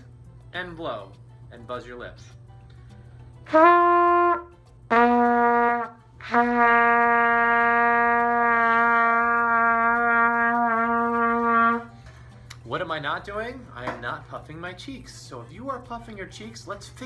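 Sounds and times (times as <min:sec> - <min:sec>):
trumpet notes: 0:03.4 - 0:12.0.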